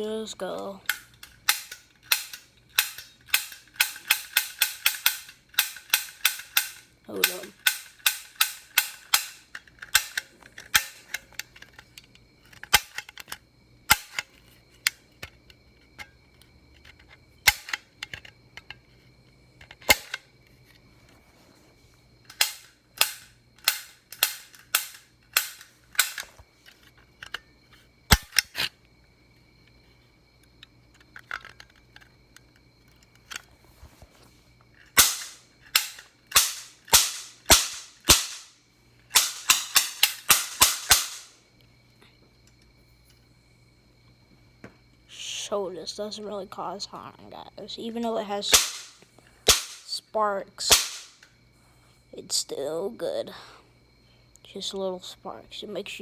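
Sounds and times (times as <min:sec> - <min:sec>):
toy cap gun pops: 0:28.1 - 0:28.7, 0:35.0 - 0:38.5, 0:39.1 - 0:41.3, 0:48.5 - 0:49.9, 0:50.7 - 0:51.2.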